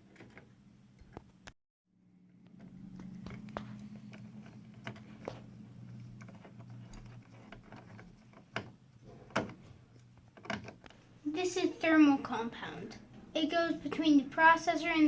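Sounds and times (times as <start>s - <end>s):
steady low hum: 0.0s - 15.0s
computer hardware clicks and taps: 2.4s - 11.0s.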